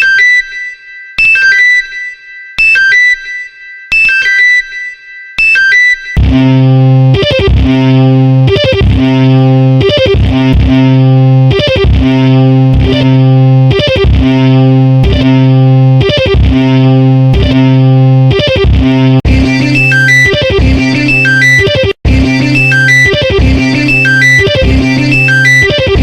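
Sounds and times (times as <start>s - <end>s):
distorted electric guitar: 6.2s - 26.0s.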